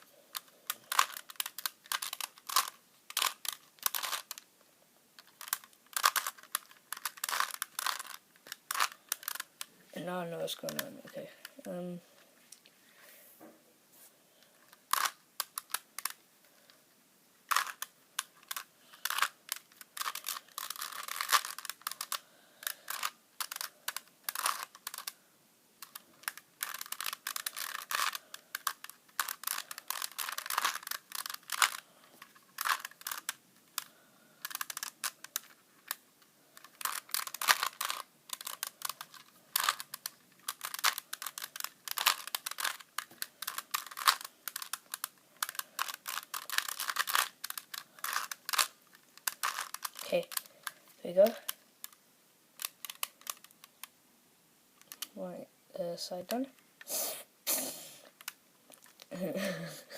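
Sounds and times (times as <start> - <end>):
puzzle cube layers clicking: 0.3 - 4.5, 5.2 - 11.8, 14.7 - 16.2, 17.5 - 25.2, 25.8 - 36.0, 36.6 - 52.0, 52.6 - 53.9, 54.8 - 55.2.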